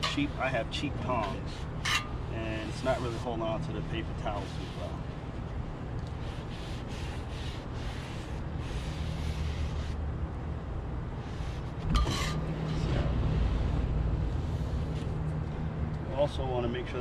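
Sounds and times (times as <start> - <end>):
steady low rumble: 0.0 - 17.0
paper towel rubbing griddle: 2.5 - 5.1, 6.2 - 10.0.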